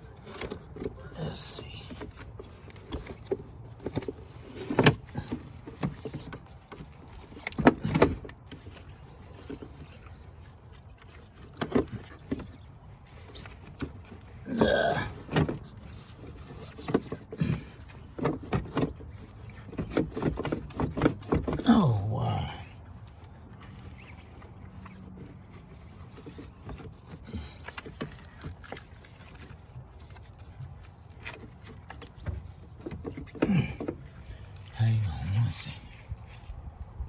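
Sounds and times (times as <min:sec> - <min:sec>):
scraping creak: 0:00.0 - 0:35.2
clunks and knocks of a car battery: 0:07.3 - 0:08.7, 0:16.6 - 0:21.6.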